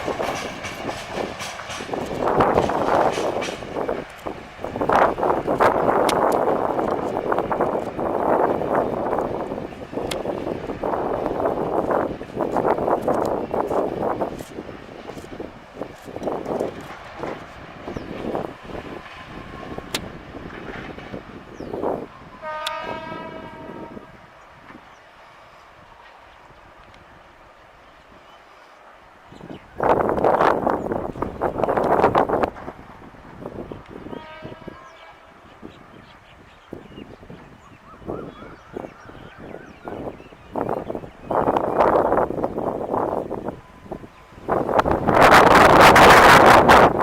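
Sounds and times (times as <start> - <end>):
wind buffeting microphone: 0.0 - 28.4, 29.1 - 47.0
train rumbling: 0.0 - 47.0
locomotive horn blast: 22.4 - 24.2, 34.0 - 35.4.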